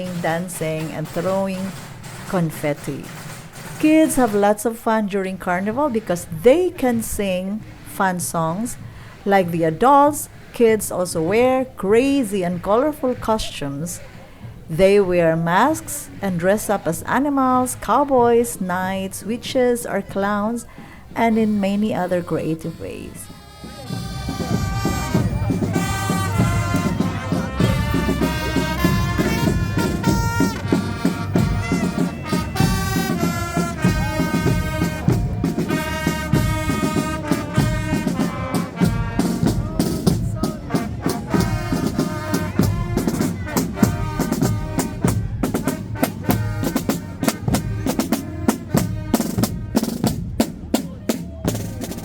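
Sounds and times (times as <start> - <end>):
drums: 0.0 - 19.8, 20.7 - 52.0
trumpets and trombones playing: 21.3 - 50.4.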